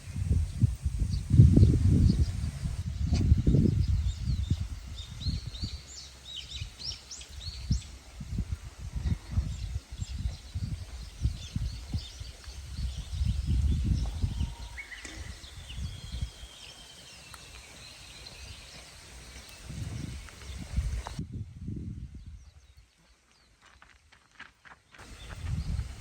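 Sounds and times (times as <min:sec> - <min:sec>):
low rumbling on microphone: 0:00.0 - 0:06.8, 0:07.4 - 0:16.5, 0:19.4 - 0:22.7, 0:25.0 - 0:26.0
small birds singing and chirping: 0:00.0 - 0:21.2, 0:21.8 - 0:24.0, 0:24.9 - 0:26.0.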